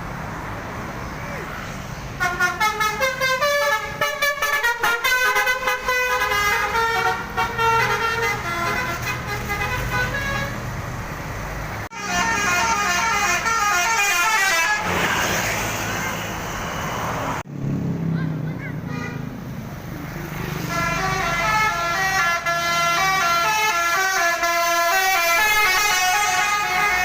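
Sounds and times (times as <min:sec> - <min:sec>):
bus engine running: 0:00.0 - 0:27.0
multi-tone air horn tune: 0:02.2 - 0:10.6, 0:11.9 - 0:16.3, 0:20.5 - 0:27.0.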